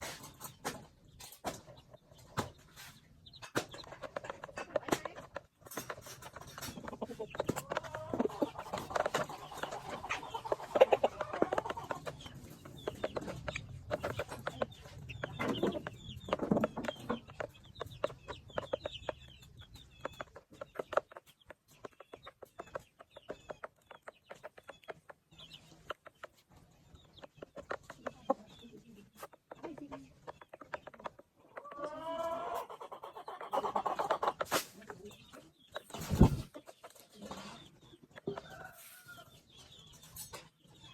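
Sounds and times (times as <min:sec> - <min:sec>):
chickens clucking: 0:00.0 - 0:40.9
sharp ticks and taps: 0:03.3 - 0:31.7.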